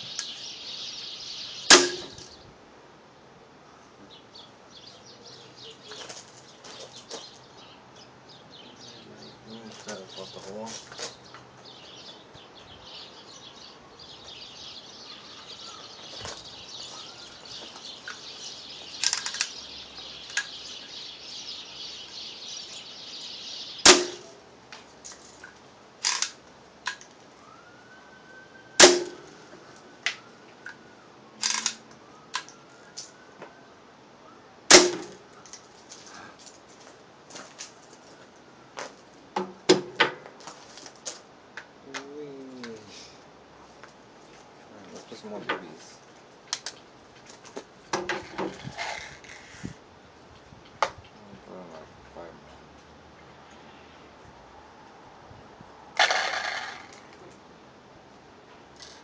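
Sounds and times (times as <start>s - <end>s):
air rifle shot crack: 1.7s - 2.2s, 23.8s - 24.4s, 28.8s - 29.3s, 34.7s - 35.2s.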